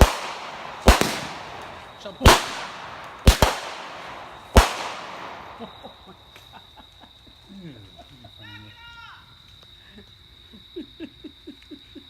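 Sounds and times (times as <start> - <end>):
firecrackers banging: 0.0 - 6.6.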